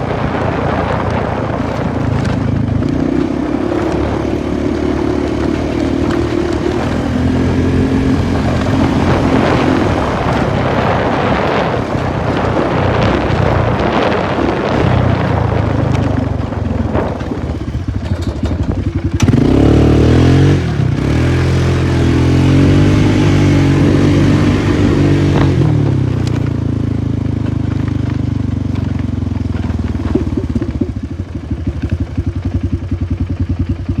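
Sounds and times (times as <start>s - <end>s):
atv engine revving and idling: 0.0s - 34.0s.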